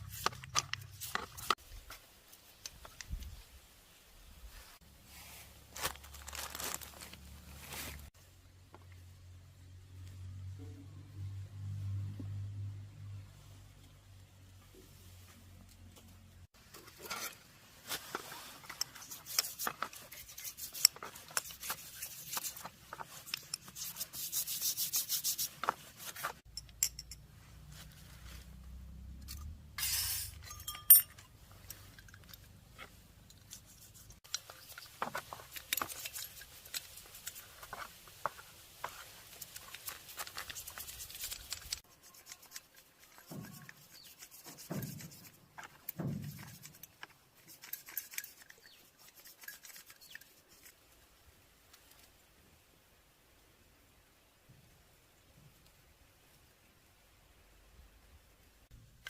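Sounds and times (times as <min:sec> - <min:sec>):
hand scraping engine parts: 0:00.0 - 0:01.6, 0:15.8 - 0:50.8
metal clicks and clinks: 0:26.5 - 0:27.3, 0:30.3 - 0:32.6.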